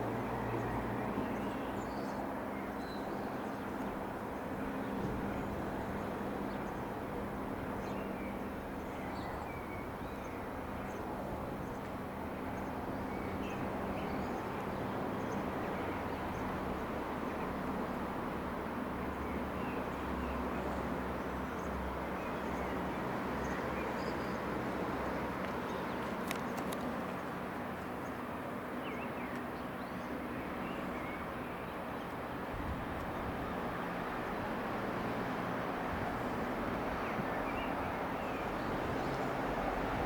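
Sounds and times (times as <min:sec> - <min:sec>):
distant light aircraft engine drone: 0:00.0 - 0:40.0.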